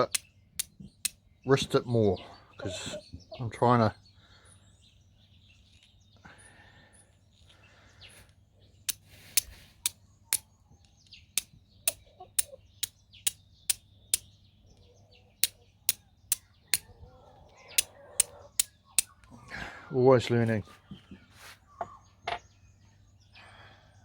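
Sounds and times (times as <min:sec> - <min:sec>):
fire striker clicking on flint: 0:00.0 - 0:01.2, 0:08.9 - 0:10.4, 0:11.0 - 0:14.3, 0:15.4 - 0:16.9, 0:17.8 - 0:19.2.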